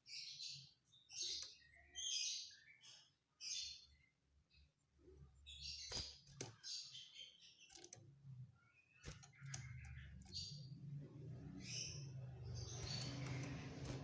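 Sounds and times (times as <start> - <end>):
bird chirps and trills: 5.3 - 14.0
sharp bird clicks: 5.8 - 10.8, 11.6 - 14.0.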